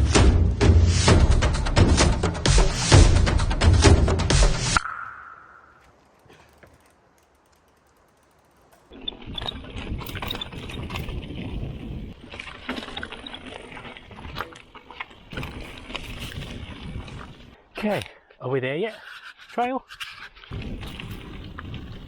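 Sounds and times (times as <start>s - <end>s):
bicycle tyres on dirt trail: 5.3s - 18.4s, 19.0s - 22.0s
bicycle rattling: 5.4s - 18.0s, 19.0s - 22.0s
drivetrain rapid ticking: 5.5s - 9.4s.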